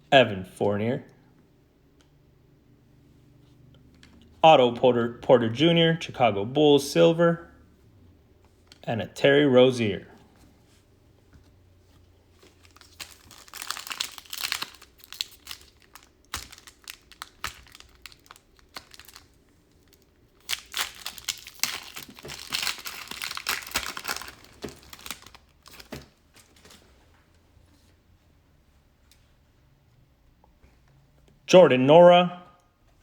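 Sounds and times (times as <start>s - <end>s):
wrapper tearing and crinkling: 12.4s - 26.6s
light crackles of wrapper: 12.4s - 26.8s.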